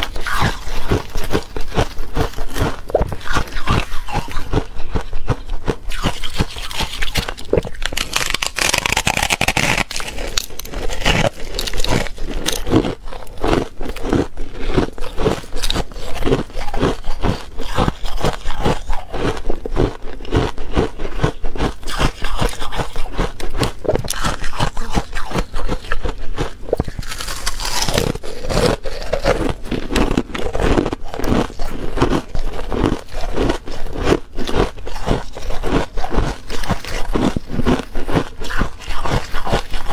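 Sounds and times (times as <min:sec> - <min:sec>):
chewing crunching ice: 0:00.0 - 0:39.9.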